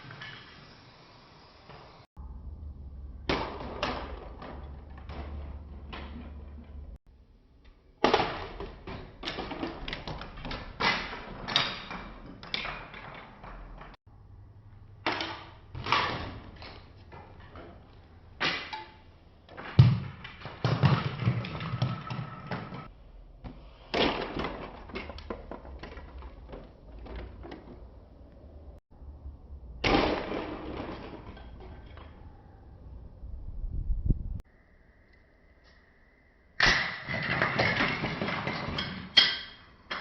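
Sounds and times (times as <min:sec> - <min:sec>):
plastic toy crashing with thuds: 0:03.2 - 0:06.4, 0:08.0 - 0:13.3, 0:15.0 - 0:16.6, 0:19.5 - 0:22.9, 0:23.9 - 0:27.8, 0:29.8 - 0:32.1, 0:36.6 - 0:39.4
plastic bricks scattering: 0:03.3 - 0:07.0, 0:08.0 - 0:14.0, 0:15.0 - 0:22.9, 0:23.9 - 0:28.6, 0:29.8 - 0:32.3, 0:36.6 - 0:40.0.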